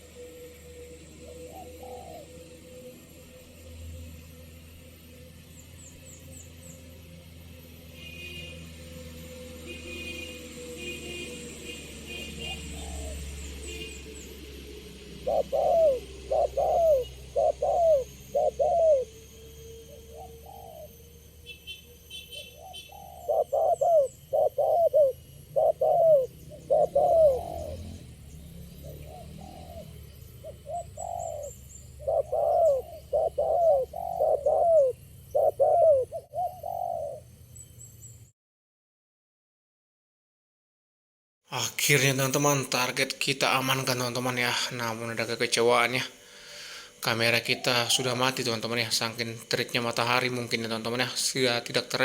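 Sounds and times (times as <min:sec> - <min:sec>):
dove cooing: 0:00.0 - 0:03.8, 0:12.0 - 0:21.1, 0:22.3 - 0:37.4, 0:45.9 - 0:49.1.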